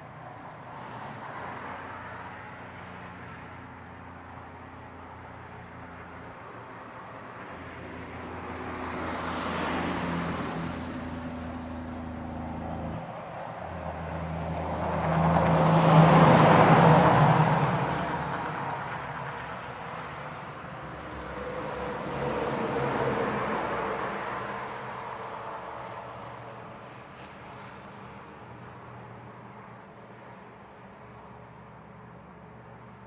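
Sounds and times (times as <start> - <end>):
heavy trucks passing: 5.9 - 29.0.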